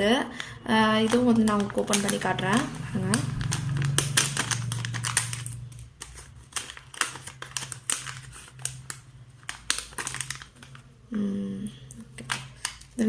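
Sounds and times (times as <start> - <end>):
packaging clicks and crinkles: 0.4 - 10.9, 11.9 - 13.0.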